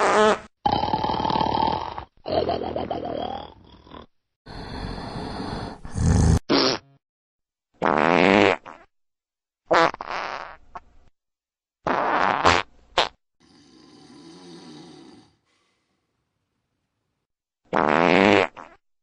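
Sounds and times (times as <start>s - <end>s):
man farting: 0.0s - 3.5s, 6.0s - 7.0s, 7.8s - 8.9s, 9.7s - 10.6s, 11.8s - 13.2s, 17.7s - 18.8s.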